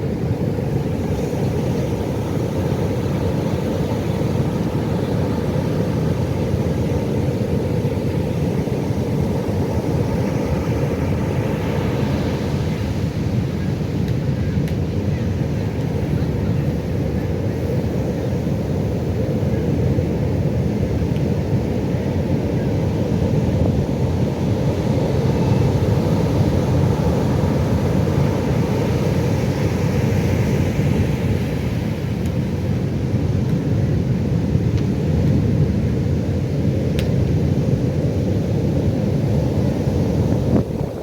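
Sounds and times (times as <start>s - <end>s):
ocean waves breaking: 0.0s - 13.4s.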